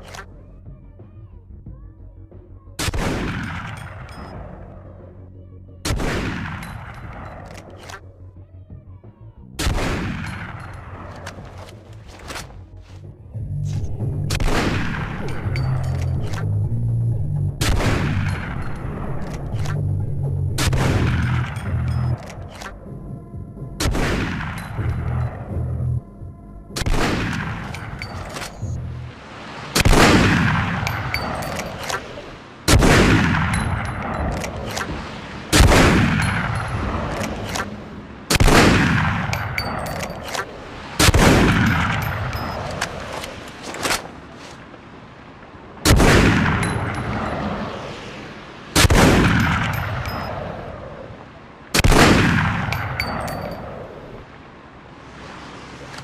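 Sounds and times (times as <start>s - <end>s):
rifle shots echoing: 2.8s - 4.9s, 5.8s - 8.1s, 9.6s - 12.5s, 14.3s - 16.4s, 17.6s - 19.7s, 20.6s - 22.7s, 23.8s - 25.4s, 26.8s - 28.8s, 29.8s - 44.3s, 45.8s - 47.8s, 48.8s - 51.0s, 51.7s - 54.2s.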